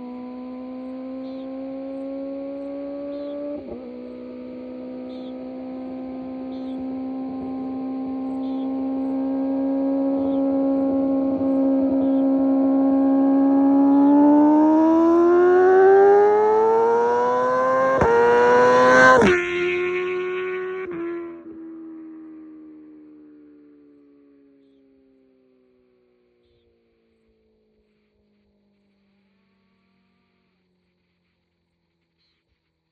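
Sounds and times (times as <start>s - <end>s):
motorcycle passing by: 0.0s - 24.9s.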